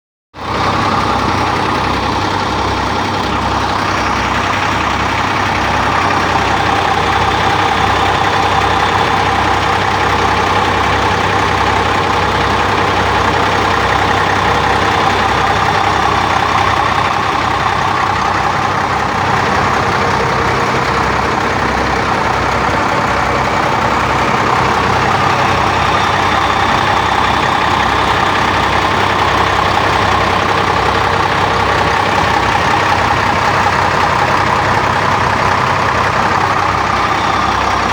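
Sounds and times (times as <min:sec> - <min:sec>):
diesel engine idling: 0:00.3 - 0:37.9.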